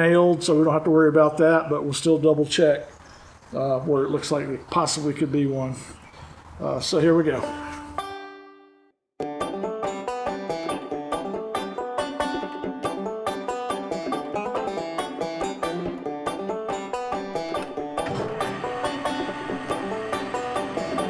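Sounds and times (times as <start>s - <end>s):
upbeat country banjo music: 7.3s - 8.5s, 9.2s - 21.0s.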